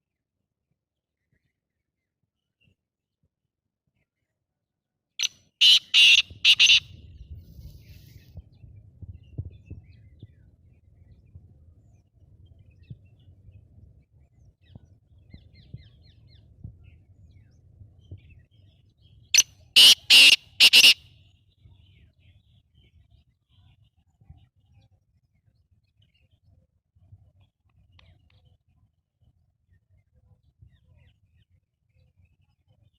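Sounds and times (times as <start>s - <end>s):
bird harsh call: 5.2s - 6.9s, 19.8s - 21.0s.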